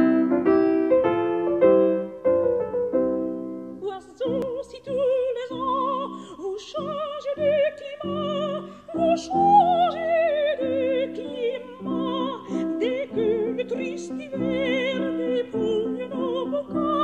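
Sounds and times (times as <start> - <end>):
piano accompaniment: 0.0 - 17.0
soprano singing with vibrato: 3.8 - 17.0.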